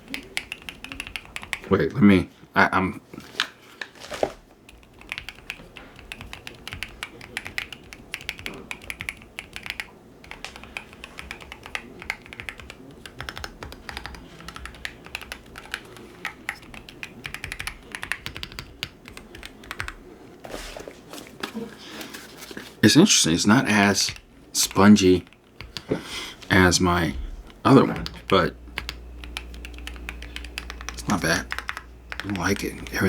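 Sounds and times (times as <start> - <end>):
keyboard keys clicking: 0.0 - 1.7, 4.7 - 20.0, 23.7 - 26.0, 27.0 - 33.0.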